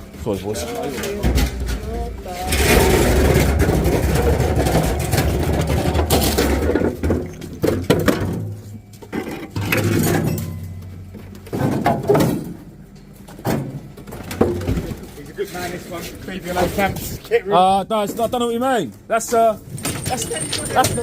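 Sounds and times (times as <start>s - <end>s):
metal knocks and clinks: 9.1s - 11.0s, 19.7s - 21.0s.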